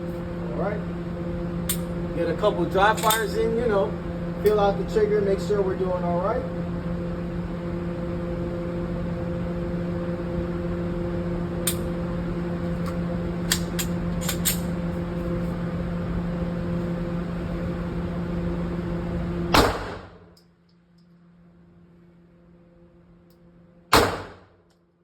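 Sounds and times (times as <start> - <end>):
low hum: 0.0 - 25.0
loud sharp bang: 19.5 - 20.2, 23.9 - 24.5.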